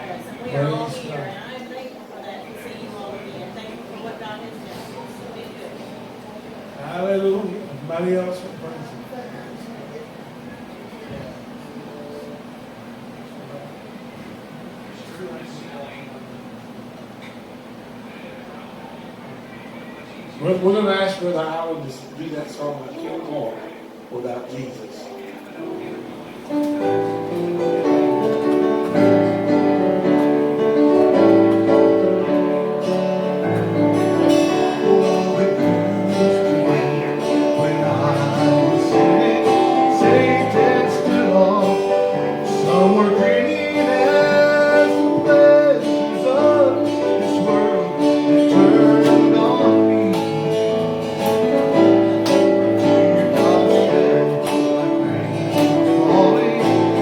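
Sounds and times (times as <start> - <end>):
guitar accompaniment: 22.5 - 57.0
person singing gospel song: 34.3 - 51.9, 52.8 - 57.0.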